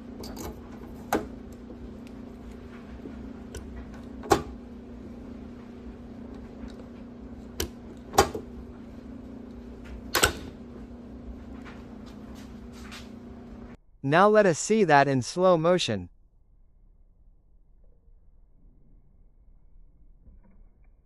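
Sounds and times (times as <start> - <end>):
steady low hum: 0.0 - 13.9.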